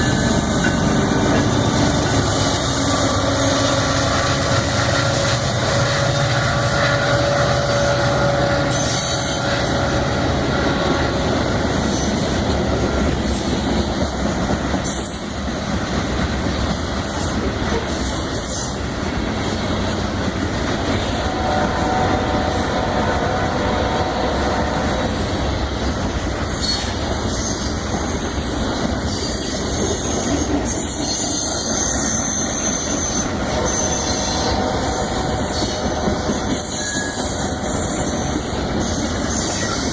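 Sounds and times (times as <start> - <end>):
clickety-clack of rail joints: 0.0 - 22.6, 24.7 - 39.9
train wheels rumbling on rails: 0.0 - 39.9
high wheel squeals: 29.1 - 39.9.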